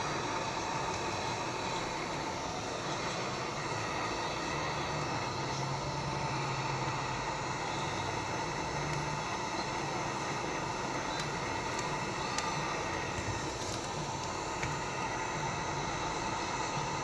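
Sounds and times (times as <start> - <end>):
hot-air gun blowing: 0.0 - 17.0.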